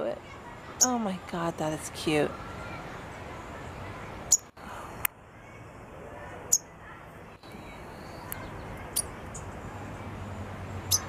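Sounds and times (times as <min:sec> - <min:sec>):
sparrow chirps: 0:00.6 - 0:01.2, 0:04.3 - 0:04.6, 0:06.5 - 0:06.7, 0:07.4 - 0:11.0.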